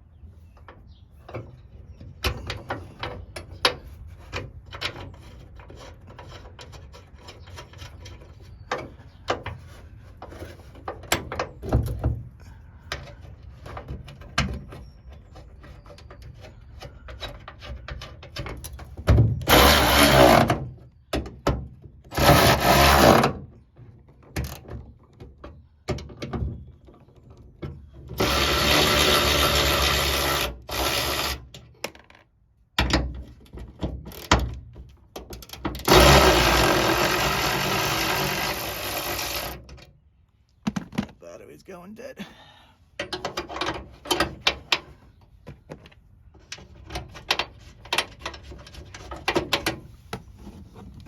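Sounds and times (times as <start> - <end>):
power ratchet running: 28.2 - 31.4, 35.9 - 39.6
tool handling clicks and rattles: 43.0 - 51.0.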